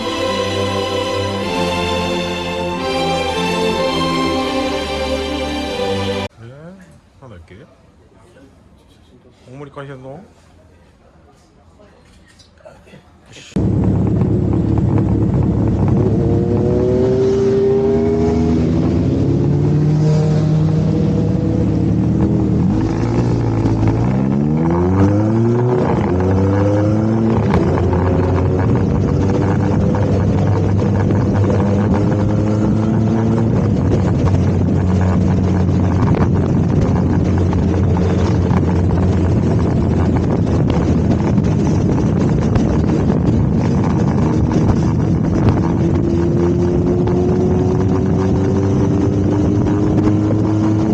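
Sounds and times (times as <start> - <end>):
wind rush: 13.6 - 50.9
motorcycle engine running: 20.4 - 50.9.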